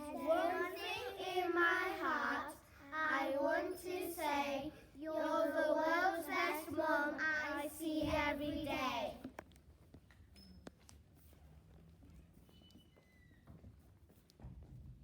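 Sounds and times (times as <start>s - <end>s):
children singing: 0.0s - 8.8s.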